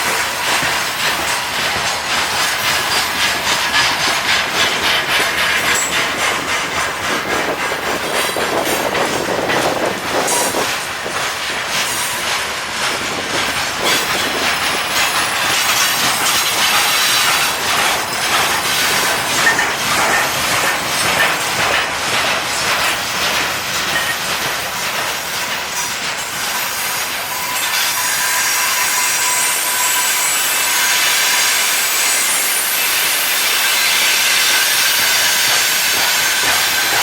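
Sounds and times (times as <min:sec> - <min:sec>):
train wheels clattering over rails: 0:00.0 - 0:37.0
high wheel squeal: 0:26.6 - 0:37.0.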